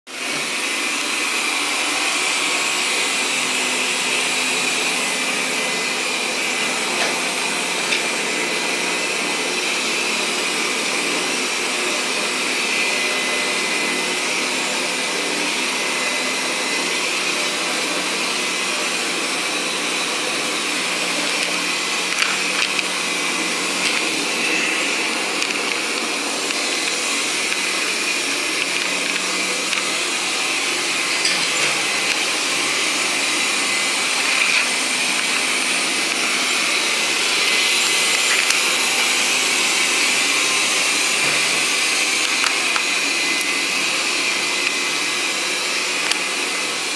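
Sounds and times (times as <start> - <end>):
small motor whirring: 15.6 - 46.9.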